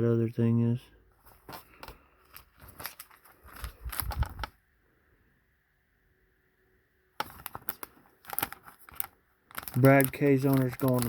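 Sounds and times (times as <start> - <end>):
trading cards clicking and rustling: 1.3 - 4.5, 7.2 - 11.0.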